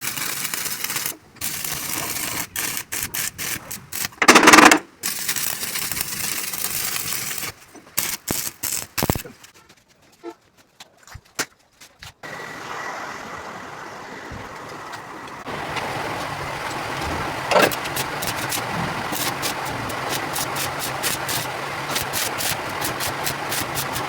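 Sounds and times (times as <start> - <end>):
welding arc crackling: 0.0 - 9.5, 15.5 - 24.0
sharp clicks: 4.0 - 4.8.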